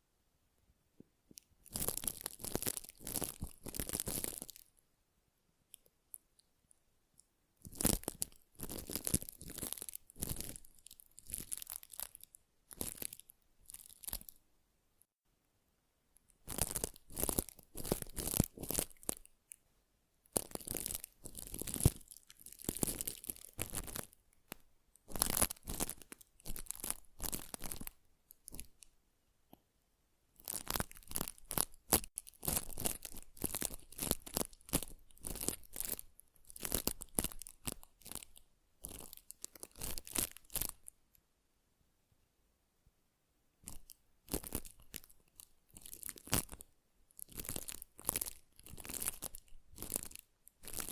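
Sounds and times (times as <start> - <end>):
crisp scratching and crackling: 1.4 - 4.7, 7.6 - 14.4, 16.4 - 19.4, 20.3 - 28.9, 30.4 - 40.9, 43.6 - 50.9.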